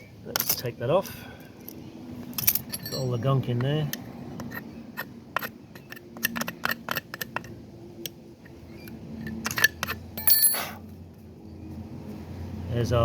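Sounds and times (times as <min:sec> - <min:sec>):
metal chain clicking and clinking: 0:02.4 - 0:03.2, 0:09.3 - 0:10.8.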